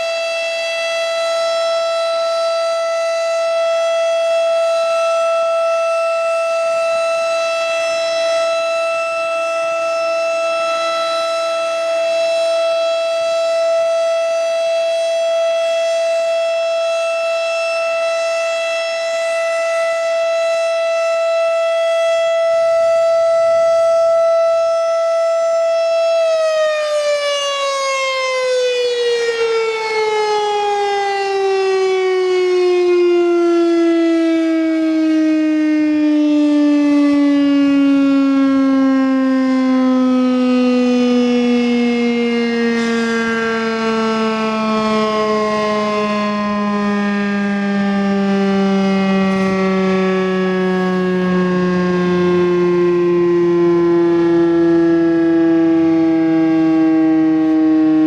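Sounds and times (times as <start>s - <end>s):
siren high-pitched tone: 0.0s - 58.0s.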